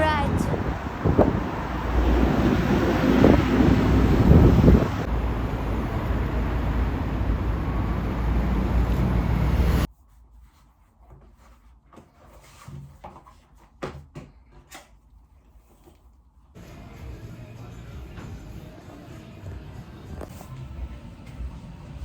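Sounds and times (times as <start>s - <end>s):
wind rumbling on microphone: 0.2s - 9.9s.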